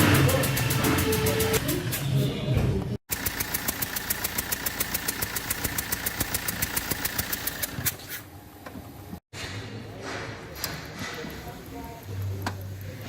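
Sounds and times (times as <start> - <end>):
diesel engine idling with ticking: 3.1 - 7.7.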